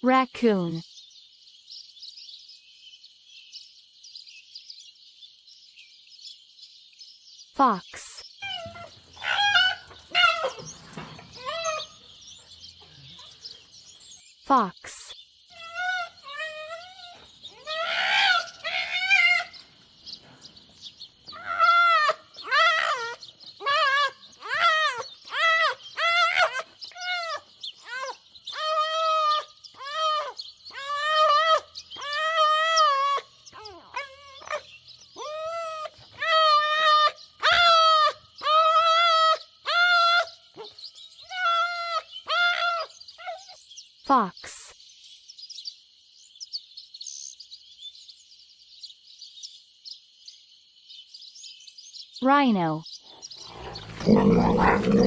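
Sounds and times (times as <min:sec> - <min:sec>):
small birds chirping: 0:00.0 - 0:55.0
fox yelping: 0:08.4 - 0:10.7, 0:15.5 - 0:19.6, 0:21.3 - 0:43.6, 0:53.4 - 0:55.0.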